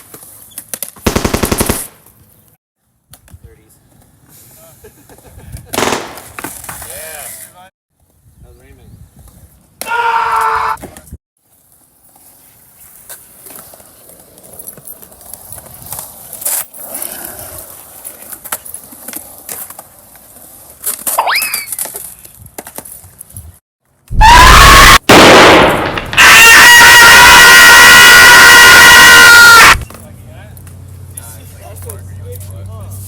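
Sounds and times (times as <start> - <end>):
loud distorted blast: 24.2 - 29.8.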